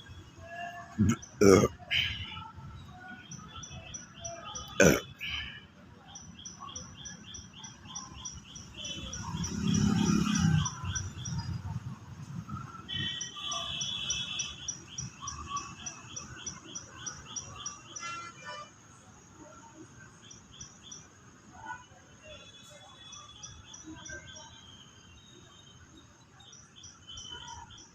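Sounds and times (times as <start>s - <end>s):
bird chirping: 6.1s - 11.7s.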